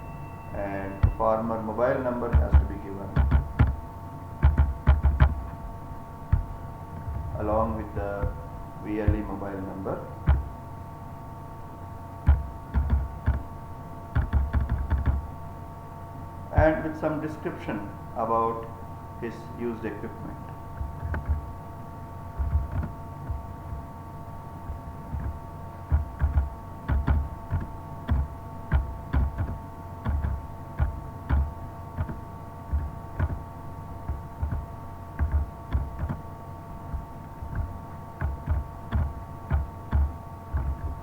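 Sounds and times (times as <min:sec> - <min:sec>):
electrical hum: 0:00.0 - 0:41.0
keyboard keys clicking: 0:02.2 - 0:03.8, 0:04.4 - 0:05.6, 0:09.1 - 0:09.4, 0:10.2 - 0:10.5, 0:12.3 - 0:13.5, 0:14.1 - 0:15.3, 0:20.7 - 0:21.6, 0:22.4 - 0:23.9, 0:24.7 - 0:41.0.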